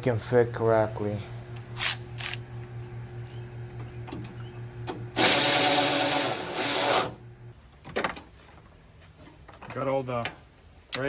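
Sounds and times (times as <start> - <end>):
steady low hum: 0.0 - 5.2
power tool whirring: 1.4 - 7.5.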